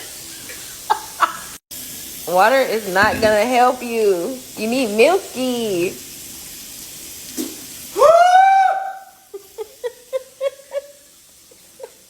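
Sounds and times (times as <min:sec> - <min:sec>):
person crying out in pain: 0:08.0 - 0:09.0.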